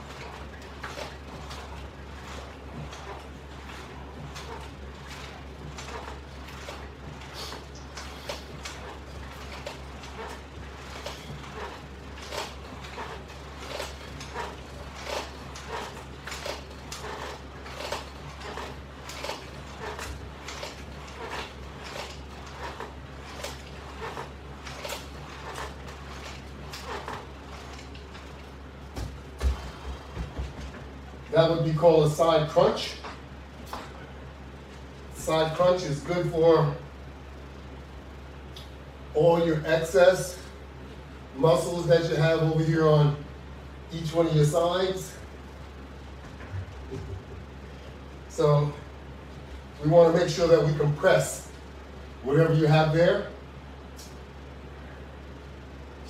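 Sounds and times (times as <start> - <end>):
resistance band rustling and creaking: 0.0 - 36.4
steady low hum: 0.0 - 56.0.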